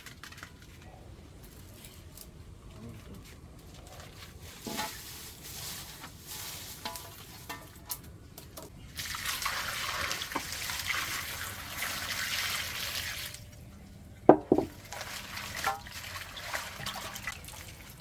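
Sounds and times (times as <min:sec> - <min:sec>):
water pouring: 0:09.0 - 0:13.6, 0:14.4 - 0:18.0
water splashing: 0:14.4 - 0:18.0.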